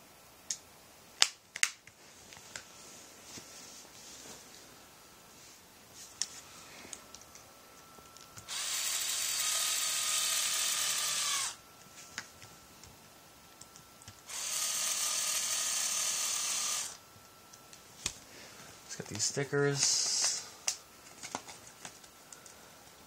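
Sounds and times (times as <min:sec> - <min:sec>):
electric screwdriver running: 0:08.5 - 0:11.6, 0:14.3 - 0:17.0.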